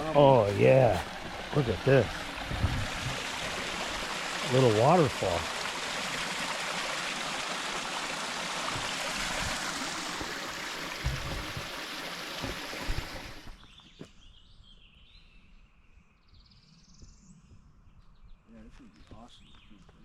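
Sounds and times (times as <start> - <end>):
small waterfall splashing: 0.0 - 13.6.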